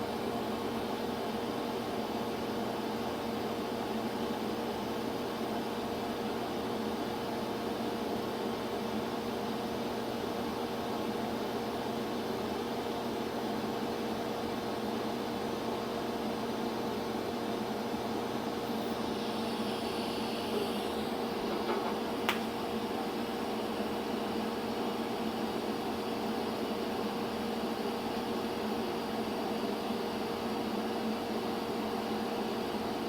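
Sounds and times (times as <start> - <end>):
welding arc hissing and humming: 18.6 - 22.8.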